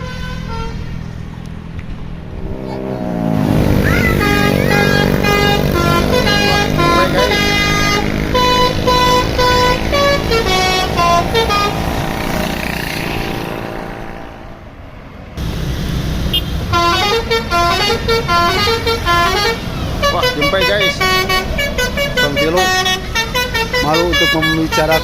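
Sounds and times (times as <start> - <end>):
musical bus horn playing a tune: 0.0 - 1.1, 3.5 - 12.6, 16.3 - 25.0
bus engine rumble: 0.0 - 25.0.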